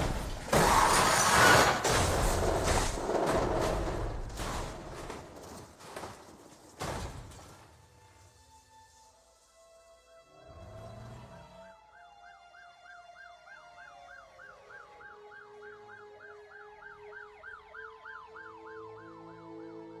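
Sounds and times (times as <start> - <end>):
slow wailing siren: 8.9 - 20.0
fast yelping siren: 11.4 - 19.4.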